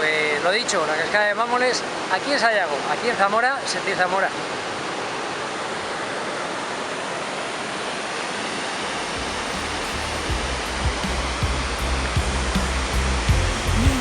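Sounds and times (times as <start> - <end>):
waterfall rushing: 0.0 - 14.0
background music with beat: 9.1 - 14.0.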